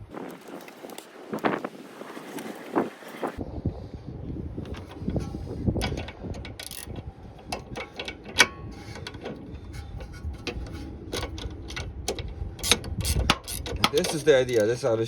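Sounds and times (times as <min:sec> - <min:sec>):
wrench clicking on metal: 0:05.1 - 0:09.2, 0:09.8 - 0:14.8.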